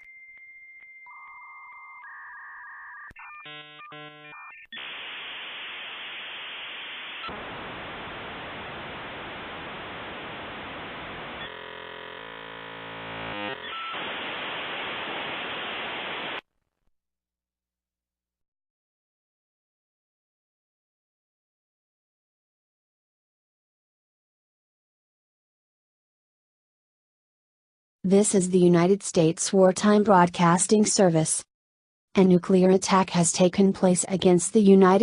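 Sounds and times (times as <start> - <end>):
modem data hiss: 3.2 - 16.4.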